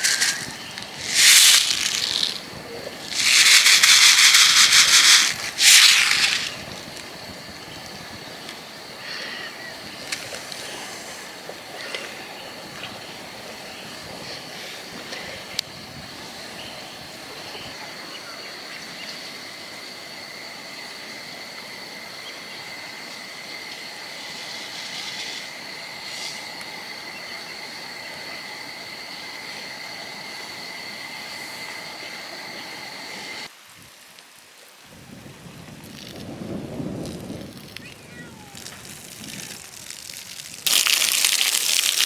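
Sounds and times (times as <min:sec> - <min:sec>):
low hiss: 0:00.0 - 0:13.9
insect chorus trilling: 0:00.0 - 0:33.6, 0:36.0 - 0:42.0.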